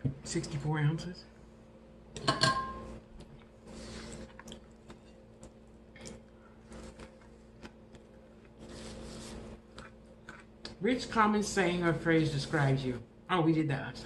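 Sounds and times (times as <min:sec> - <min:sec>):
chewing and wet mouth sounds: 0:03.2 - 0:08.7, 0:09.3 - 0:10.8.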